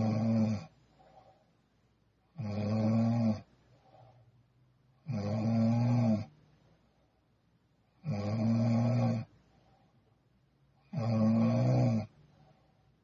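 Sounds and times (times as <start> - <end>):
woman snoring: 0.0 - 0.7, 2.4 - 3.5, 5.0 - 6.3, 8.0 - 9.3, 10.9 - 12.2
faint breaths: 0.0 - 2.1, 3.4 - 4.9, 6.2 - 8.0, 9.2 - 10.9, 12.0 - 13.0.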